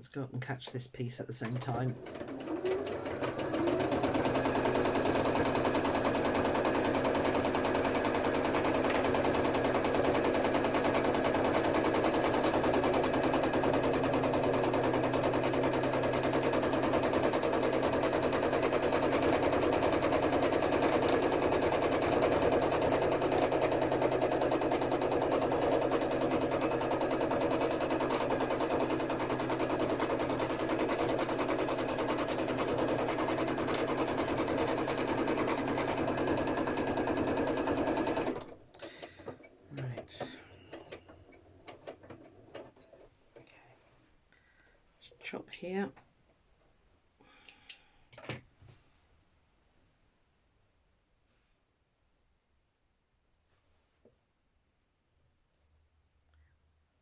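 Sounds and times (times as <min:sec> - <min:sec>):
sewing machine running fast: 0:01.6 - 0:40.2.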